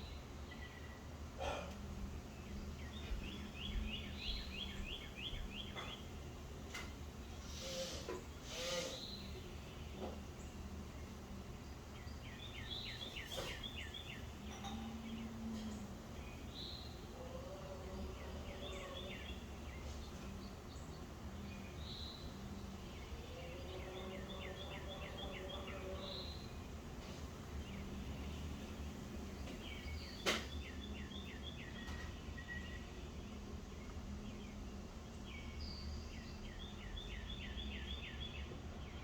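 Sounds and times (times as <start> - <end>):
songbirds chirping in trills: 0.0 - 39.0.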